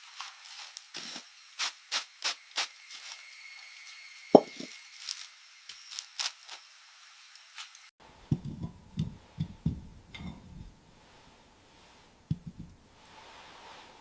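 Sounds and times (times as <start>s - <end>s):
knock: 4.4s - 4.7s.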